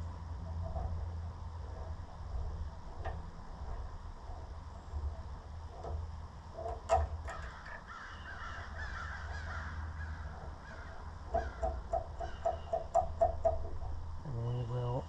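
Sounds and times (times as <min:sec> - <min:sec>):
crow cawing: 0:07.3 - 0:12.9.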